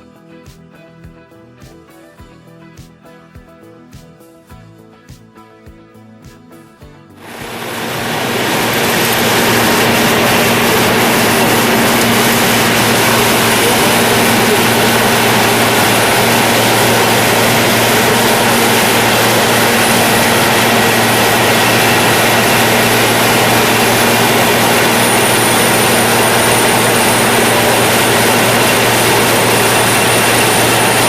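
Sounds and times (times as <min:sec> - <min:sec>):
faint high whine: 0:07.2 - 0:31.0
loud machine running: 0:07.2 - 0:31.0.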